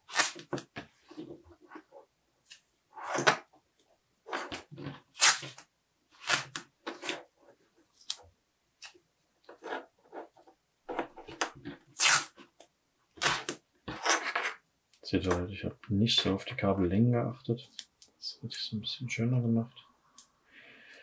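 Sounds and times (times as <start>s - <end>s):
tape ripping and rustling: 0.0s - 0.7s, 4.4s - 7.2s, 12.0s - 12.4s, 13.2s - 14.3s.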